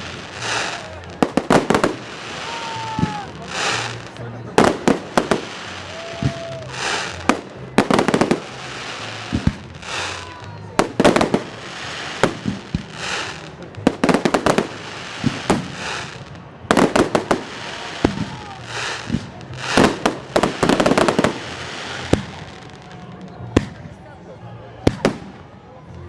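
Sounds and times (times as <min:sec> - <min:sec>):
fireworks bangs: 0:00.0 - 0:24.0, 0:24.8 - 0:25.5.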